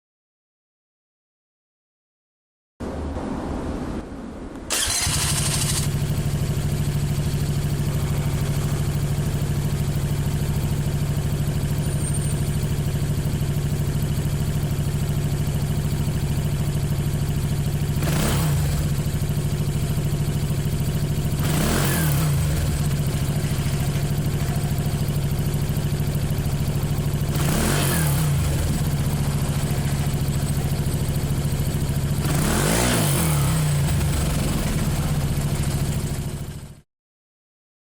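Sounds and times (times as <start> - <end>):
scooter throttle blips: 4.7 - 12.8
scooter engine idling: 4.7 - 36.8.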